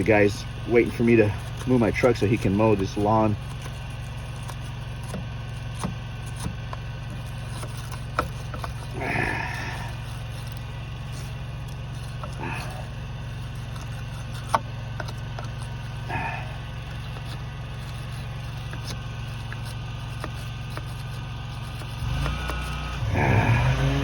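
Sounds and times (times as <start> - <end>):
engine idling: 0.0 - 24.0.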